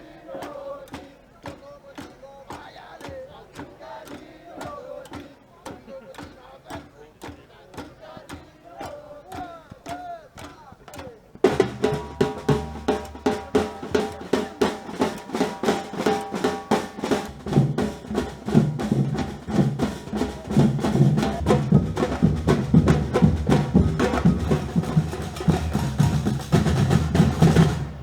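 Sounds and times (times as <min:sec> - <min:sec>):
drum ensemble fast rhythm: 0:00.0 - 0:28.0
deep bass drums: 0:17.4 - 0:28.0.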